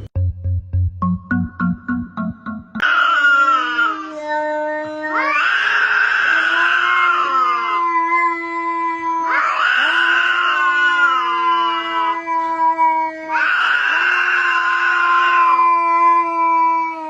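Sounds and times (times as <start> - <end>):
held music notes: 0.0 - 2.8
animal wailing: 2.8 - 17.0.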